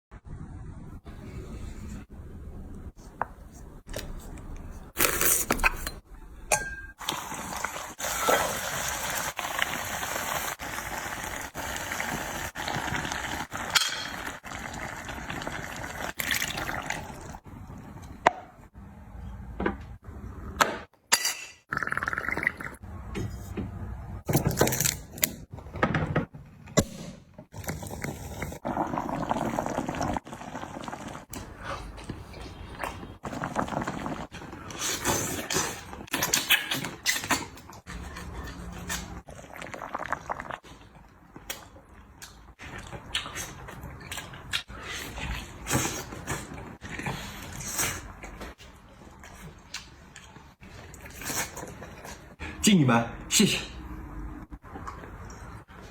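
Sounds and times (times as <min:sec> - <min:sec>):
dishes and utensils clinking: 0:05.7 - 0:07.1.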